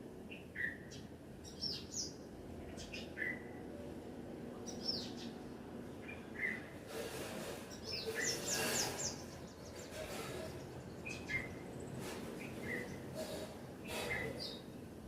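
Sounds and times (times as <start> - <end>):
outdoor background hiss: 0.0 - 15.0
birds chirping: 4.6 - 6.8, 7.7 - 14.9.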